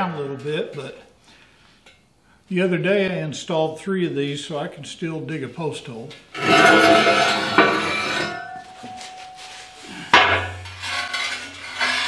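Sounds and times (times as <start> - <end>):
hard objects clattering and knocking: 6.4 - 9.2, 10.1 - 12.0
metallic ringing: 6.4 - 12.0.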